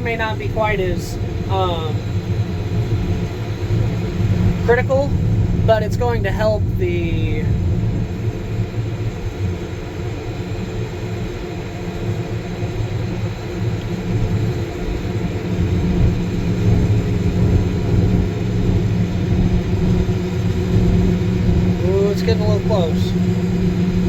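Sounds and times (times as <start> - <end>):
combine harvester drone: 0.0 - 24.0.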